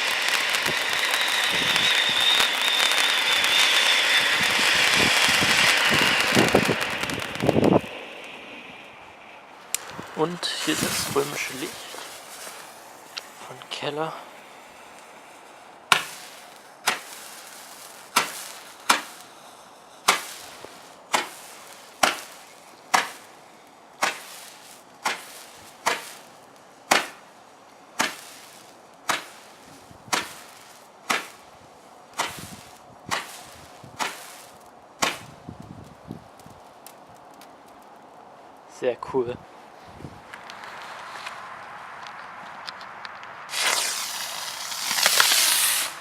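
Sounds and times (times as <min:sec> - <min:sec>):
roman candle popping: 0:15.9 - 0:27.4, 0:42.1 - 0:46.0.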